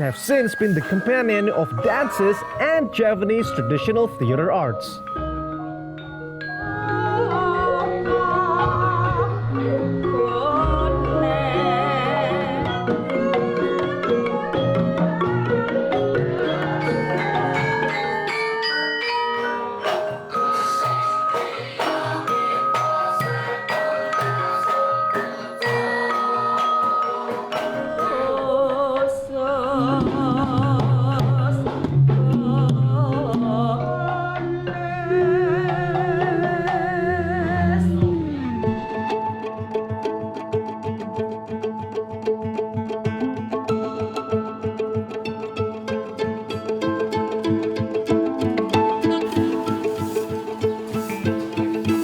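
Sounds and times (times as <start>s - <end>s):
person singing with vibrato: 0.0s - 5.1s, 6.6s - 39.2s, 49.1s - 52.0s
wavering melodic line: 0.0s - 29.0s
bronze metallophones ringing: 0.0s - 29.1s.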